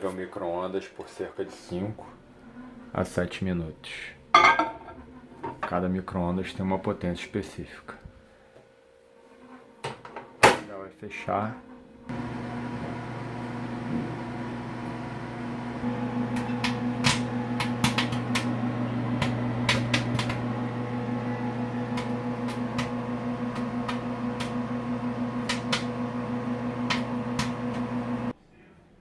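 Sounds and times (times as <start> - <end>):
microwave oven humming: 12.1 - 28.3
popcorn popping: 12.1 - 28.3.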